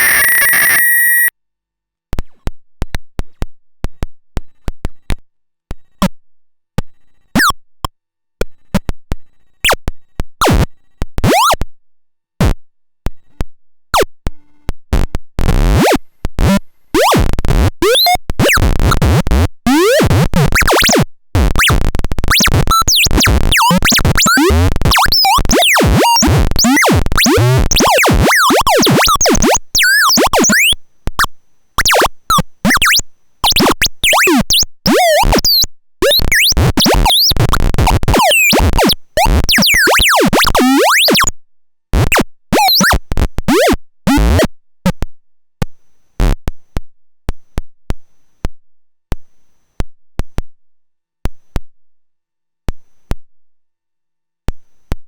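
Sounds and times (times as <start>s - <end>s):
steady high synth tone: 0.0s - 1.3s
synth chirps and pitch glides: 0.0s - 1.3s.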